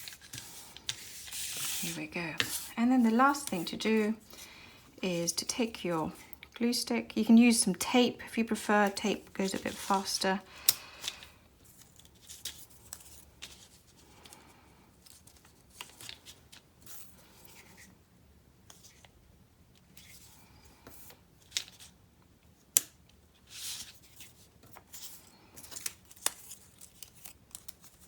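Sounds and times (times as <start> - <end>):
paper rustling: 0.0 - 4.6, 8.6 - 14.4, 23.4 - 28.0.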